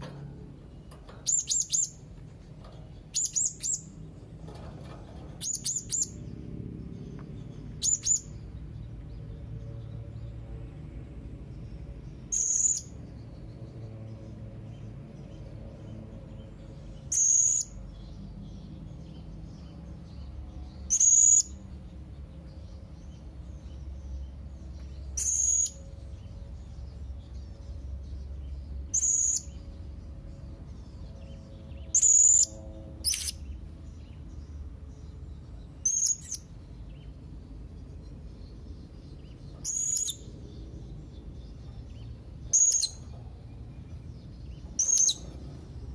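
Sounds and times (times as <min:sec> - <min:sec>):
parrot high-pitched calls: 0:39.6 - 0:40.3, 0:42.5 - 0:43.0, 0:44.8 - 0:45.2.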